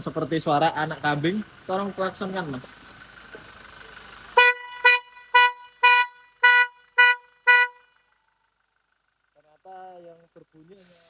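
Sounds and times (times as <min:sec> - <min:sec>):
car horn short beeps: 0:04.4 - 0:08.2.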